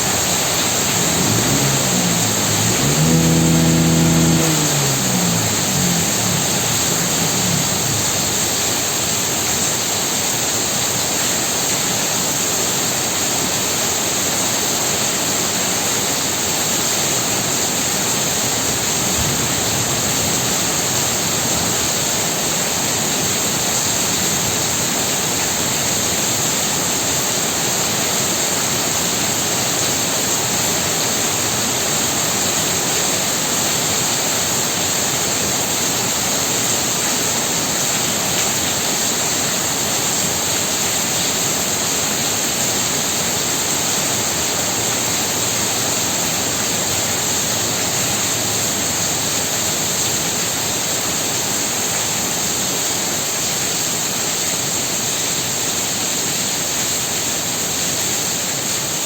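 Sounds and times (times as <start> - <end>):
vehicle engine hum: 0.0 - 10.0
heavy rain falling: 0.0 - 59.0.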